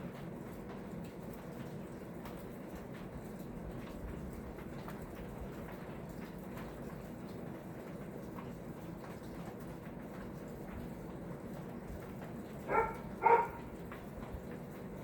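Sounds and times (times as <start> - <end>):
ceiling fan humming: 10.9 - 15.0
animal yelps: 12.7 - 13.7.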